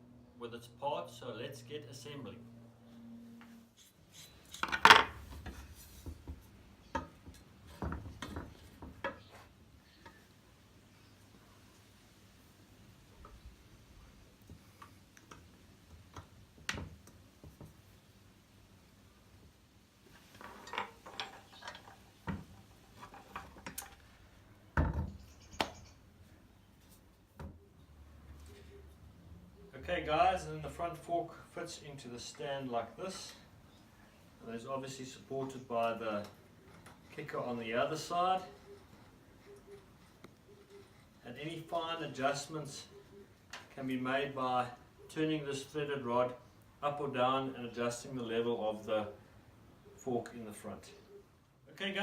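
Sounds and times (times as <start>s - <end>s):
parts clicking and knocking: 20.2s - 24.1s
metal parts clanking: 20.4s - 22.2s.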